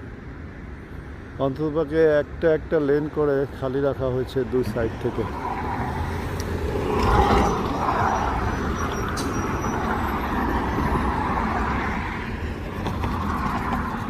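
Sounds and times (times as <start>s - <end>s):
road traffic passing: 0.0s - 14.0s
bus pulling in: 4.5s - 14.0s.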